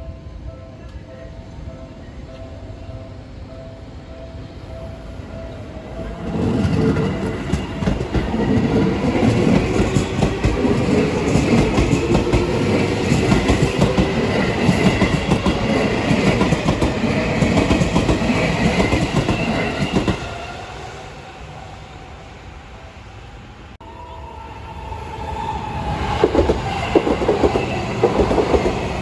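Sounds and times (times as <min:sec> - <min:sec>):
electric train passing: 0:00.0 - 0:29.0
wheels rattling on rails: 0:05.4 - 0:20.4, 0:25.7 - 0:29.0.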